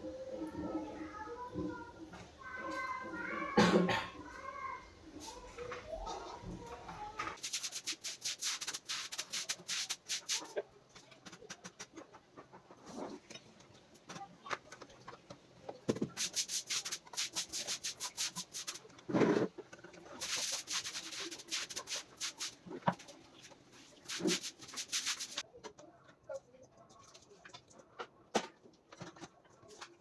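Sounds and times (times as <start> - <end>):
rubbing and scraping: 5.2 - 25.5.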